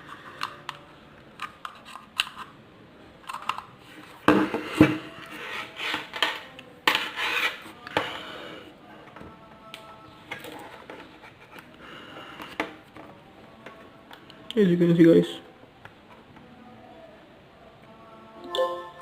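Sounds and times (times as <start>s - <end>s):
plastic clicks and scraping: 0.0s - 2.5s, 3.2s - 8.0s.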